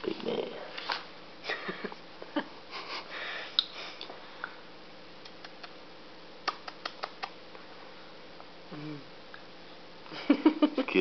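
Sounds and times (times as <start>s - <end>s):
baby mouth sounds: 6.4s - 7.4s.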